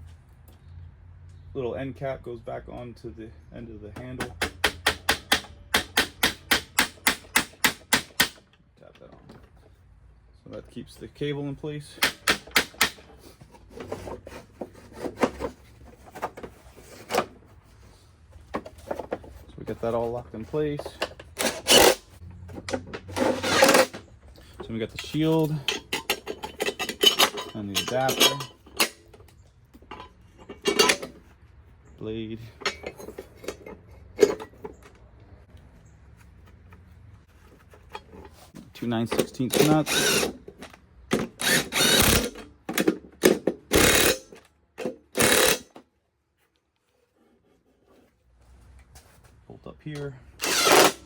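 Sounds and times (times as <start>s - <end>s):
metal blade parts clinking: 25.0s - 29.1s, 29.8s - 31.2s.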